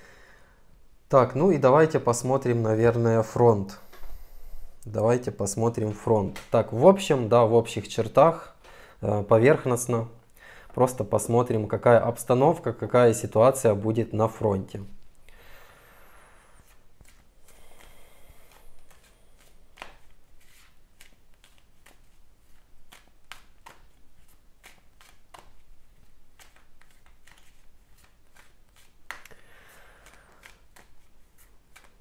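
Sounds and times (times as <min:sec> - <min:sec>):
cards being shuffled: 0:16.6 - 0:17.9, 0:18.5 - 0:32.0.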